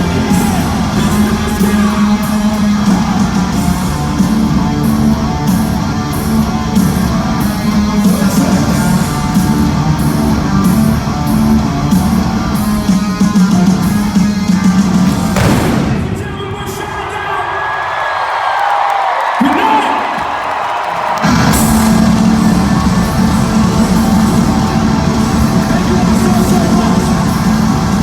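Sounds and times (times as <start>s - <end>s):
hard rock band playing: 0.0s - 16.2s, 21.2s - 28.0s.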